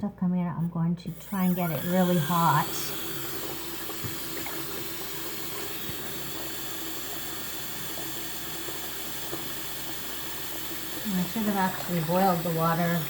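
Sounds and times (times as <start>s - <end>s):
tap water running into sink: 1.1s - 13.0s.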